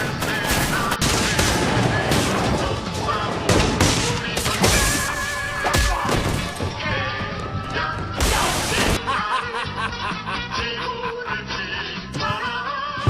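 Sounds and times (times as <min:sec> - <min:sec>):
loud crashing burst: 0:00.9 - 0:05.4.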